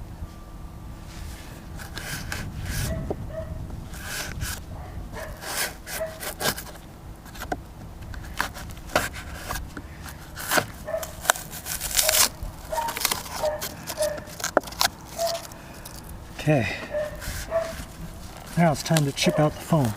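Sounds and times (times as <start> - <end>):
hacksaw rasping through wood: 8.3 - 16.0
dog whimpering: 12.7 - 14.3, 16.8 - 17.8.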